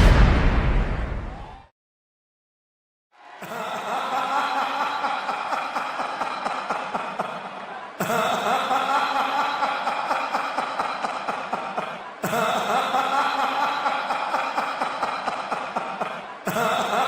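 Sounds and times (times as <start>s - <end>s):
distorted menacing laugh: 3.4s - 17.0s.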